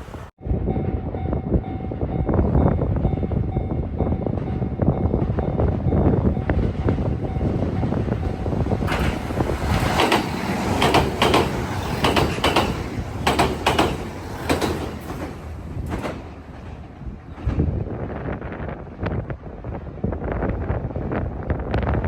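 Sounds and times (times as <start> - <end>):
steady train rumble: 0.0 - 22.0
train wheels clattering over rail joints: 8.2 - 17.8.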